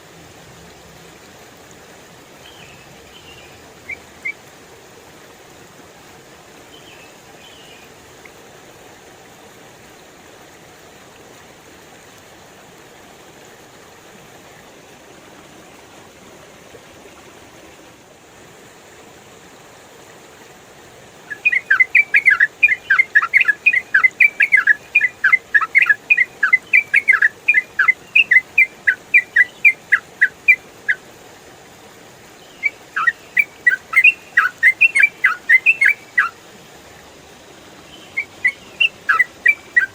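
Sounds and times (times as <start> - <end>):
running water hiss: 0.0 - 39.9
bird singing bubbling chirps: 2.4 - 4.4, 21.1 - 31.0, 32.4 - 36.4, 37.9 - 39.9.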